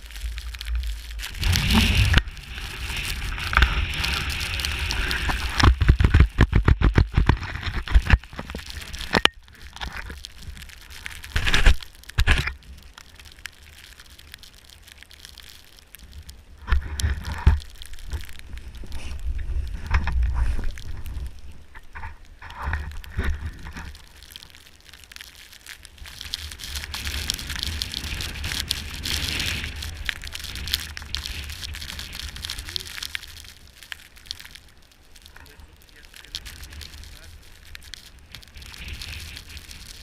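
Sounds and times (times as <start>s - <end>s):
snowboard scraping over snow: 0.2s - 9.1s, 26.0s - 33.6s, 35.5s - 37.4s.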